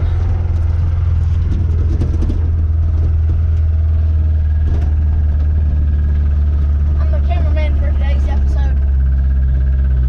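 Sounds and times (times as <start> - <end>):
engine droning: 0.0 - 10.0.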